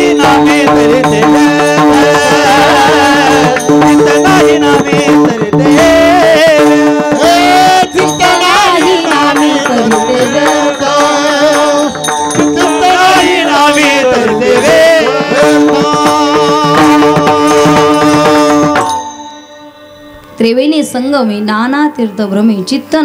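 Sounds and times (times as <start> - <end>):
person singing: 0.0 - 19.1
hand drum strokes: 0.0 - 19.2.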